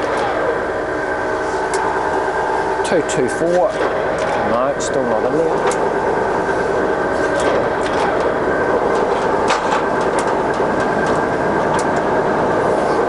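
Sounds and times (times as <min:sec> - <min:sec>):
lathe gear whine and clatter: 0:00.0 - 0:13.0.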